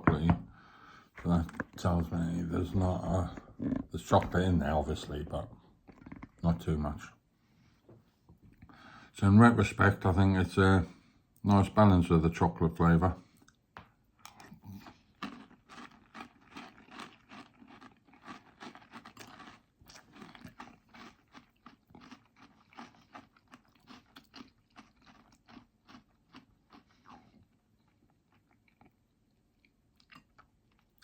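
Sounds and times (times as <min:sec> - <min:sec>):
person chewing crunchy cereal: 0:05.8 - 0:06.4, 0:14.2 - 0:31.0.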